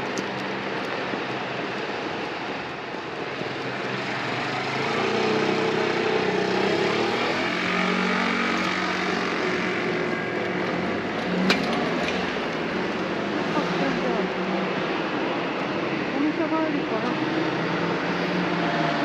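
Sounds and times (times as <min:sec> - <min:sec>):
steady road noise: 0:00.0 - 0:19.0
vehicle passing by: 0:04.0 - 0:15.1.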